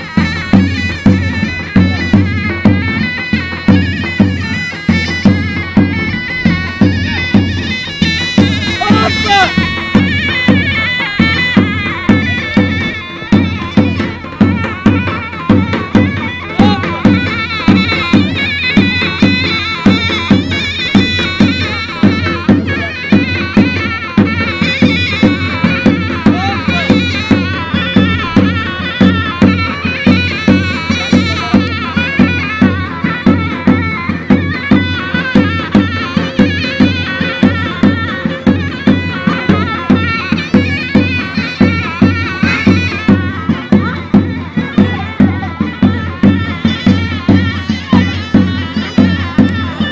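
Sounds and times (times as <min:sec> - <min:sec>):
shrill double-reed pipe melody: 0:00.0 - 0:49.9.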